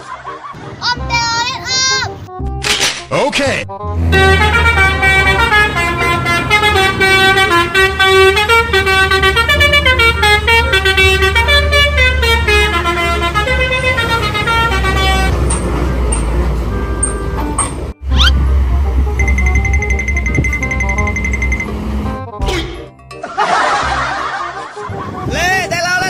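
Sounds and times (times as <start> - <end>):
multi-tone bus horn melody: 3.7 - 22.9, 24.0 - 25.7
bus engine running: 3.8 - 25.3.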